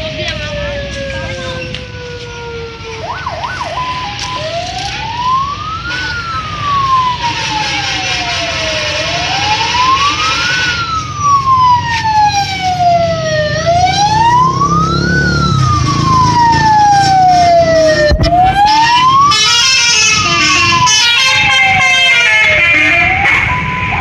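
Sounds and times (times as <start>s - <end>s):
electronic wail siren: 0.0s - 24.0s.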